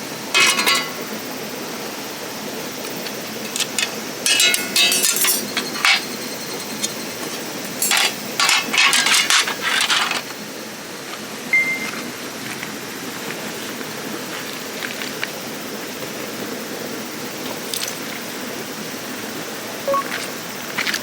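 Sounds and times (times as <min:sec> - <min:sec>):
hard objects clinking and knocking: 0:03.5 - 0:10.2.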